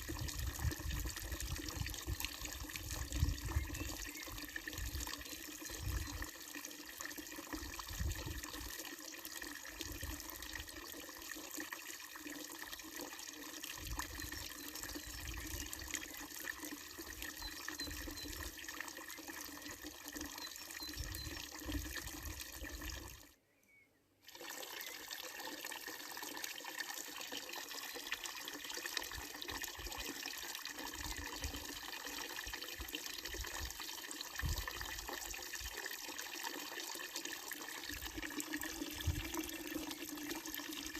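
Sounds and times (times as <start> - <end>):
water splashing into trough: 24.2 - 40.9.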